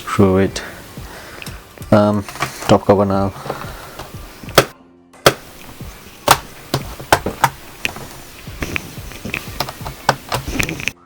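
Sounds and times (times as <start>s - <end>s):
plastic clicks and taps: 5.3s - 11.0s.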